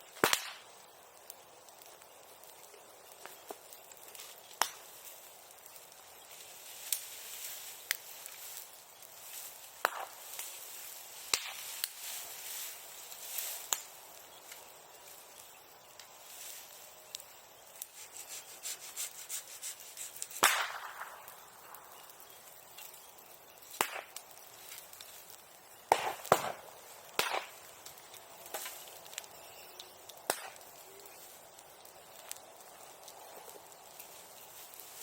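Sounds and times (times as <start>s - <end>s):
bonfire crackling: 0.0s - 35.0s
sharp loud pops of fire: 0.1s - 0.8s, 3.2s - 5.1s, 6.8s - 14.7s, 20.2s - 23.0s, 23.6s - 31.2s.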